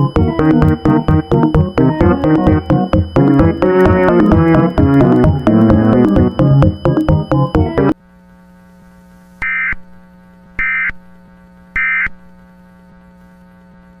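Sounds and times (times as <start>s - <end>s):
digital data bursts: 0.0s - 8.0s.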